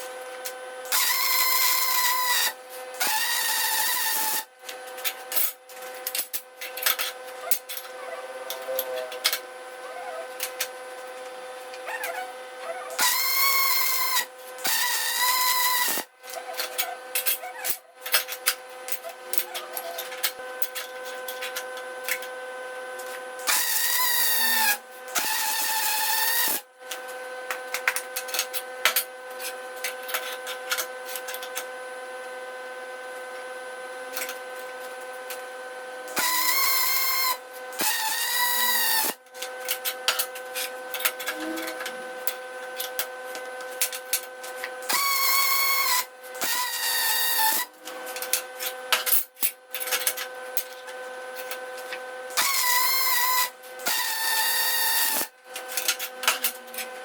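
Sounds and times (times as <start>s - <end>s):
steady humming tones: 0.0s - 33.4s, 34.0s - 49.1s
short power tool bursts: 36.1s - 39.2s, 44.9s - 47.7s, 52.4s - 55.3s.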